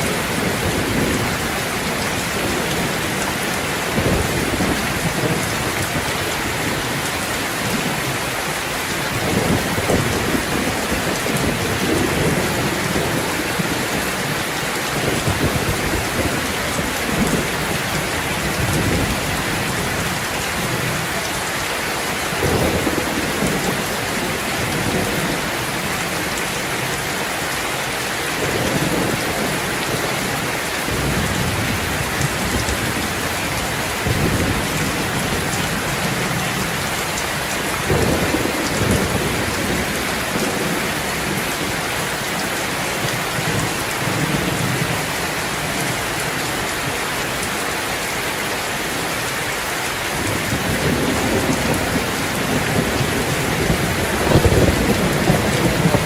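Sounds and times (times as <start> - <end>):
heavy rain falling: 0.0 - 56.0
thunder rumbling: 37.8 - 41.8, 50.2 - 56.0.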